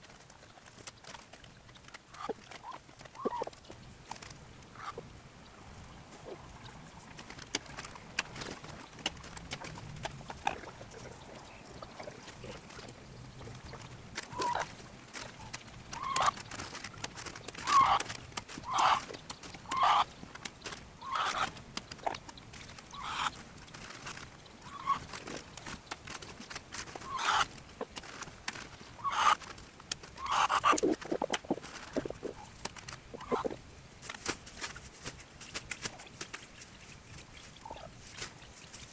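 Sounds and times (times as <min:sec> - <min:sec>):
chickens clucking: 0:01.7 - 0:26.2, 0:26.8 - 0:33.7, 0:37.0 - 0:38.6
short chicken calls: 0:17.6 - 0:18.0, 0:18.6 - 0:19.0, 0:19.7 - 0:20.1, 0:21.0 - 0:21.4, 0:23.0 - 0:23.3, 0:27.1 - 0:27.5, 0:29.0 - 0:29.4, 0:30.2 - 0:32.4
light clicks and rustling: 0:34.0 - 0:38.9.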